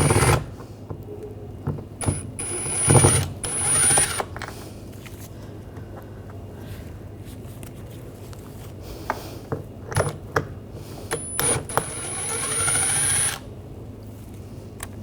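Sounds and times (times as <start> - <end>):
screwdriver squeaking on screws: 0.0 - 0.4, 2.0 - 4.3, 11.1 - 13.4.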